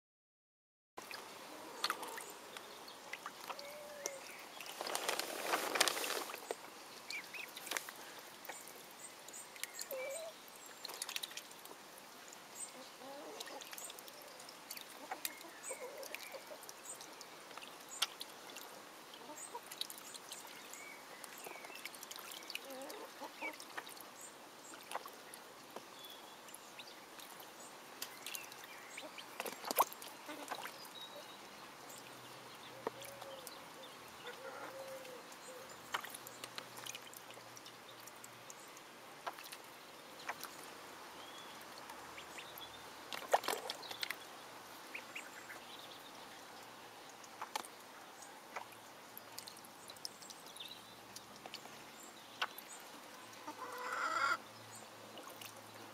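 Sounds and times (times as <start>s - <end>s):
ducklings splashing in water: 1.0s - 55.9s
ducklings calling softly: 9.5s - 11.4s.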